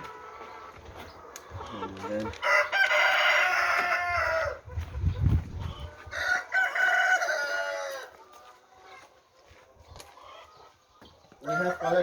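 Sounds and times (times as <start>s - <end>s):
rooster crowing: 2.4s - 4.6s, 6.1s - 8.1s.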